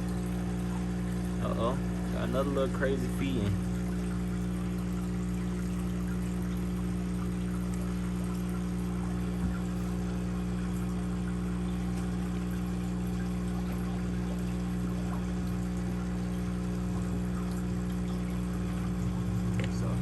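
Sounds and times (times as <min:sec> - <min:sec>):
aquarium pump humming: 0:00.0 - 0:20.0
water pouring and splashing: 0:00.0 - 0:20.0.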